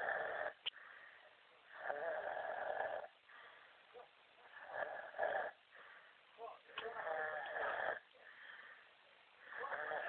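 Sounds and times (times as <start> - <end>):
man snoring heavily: 0.0 - 0.6, 1.8 - 3.1, 4.6 - 5.6, 6.9 - 8.0, 9.6 - 10.0.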